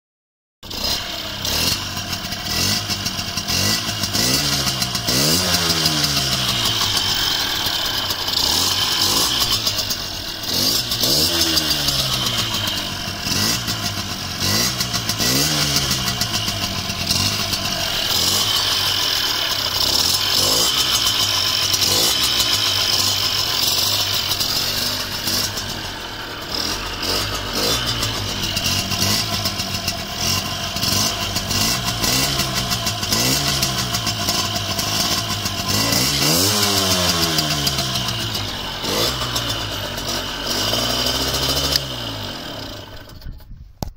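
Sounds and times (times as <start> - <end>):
two-stroke engine revving: 0.6 - 43.5.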